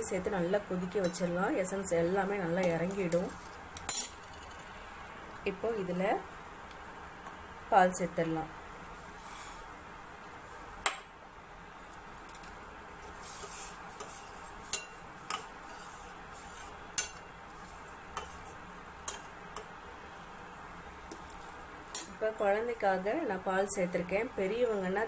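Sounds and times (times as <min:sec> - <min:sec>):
metal spoon clinking on pot: 0:01.0 - 0:01.3, 0:17.0 - 0:17.2.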